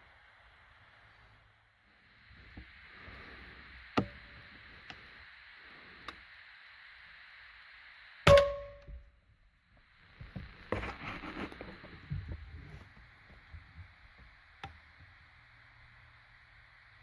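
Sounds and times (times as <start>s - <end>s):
steady background hiss: 0.0s - 17.0s
air rifle shot with metallic ring: 8.3s - 9.0s.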